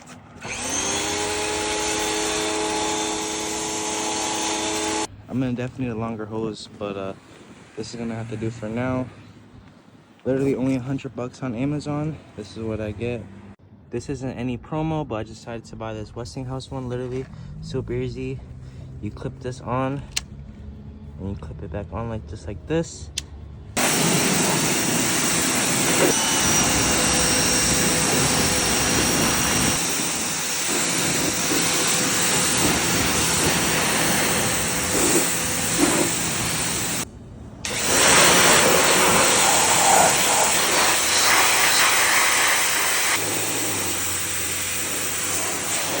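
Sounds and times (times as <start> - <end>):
pressure washer spraying water: 0.0 - 5.1, 23.8 - 37.1, 37.7 - 46.0.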